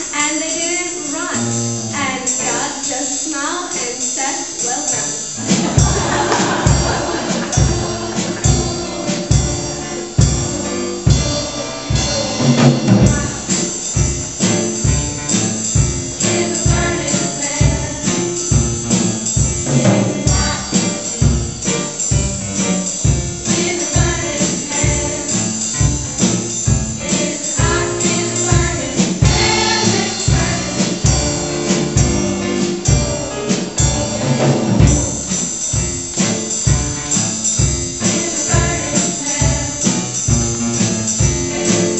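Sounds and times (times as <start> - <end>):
voices singing along: 0.0 - 19.0, 19.6 - 21.8, 22.6 - 34.4, 37.9 - 41.9
music with jingling percussion: 0.0 - 41.9.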